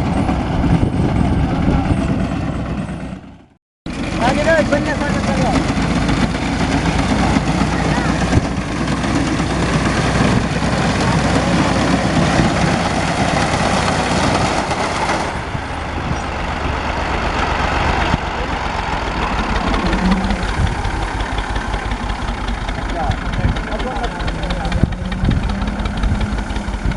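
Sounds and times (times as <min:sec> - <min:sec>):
tractor diesel engine running: 0:00.0 - 0:26.9
reaper clattering: 0:16.8 - 0:26.9.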